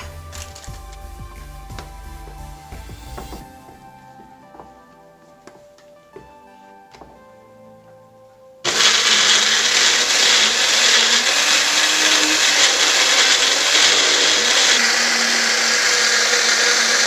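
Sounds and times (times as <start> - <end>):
electric blender running: 8.7 - 17.0.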